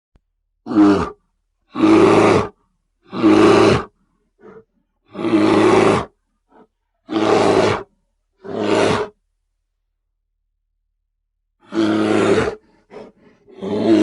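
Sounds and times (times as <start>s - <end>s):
bear grunting: 0.7s - 9.2s, 11.6s - 14.0s
bear roaring: 0.7s - 9.2s, 11.6s - 14.0s.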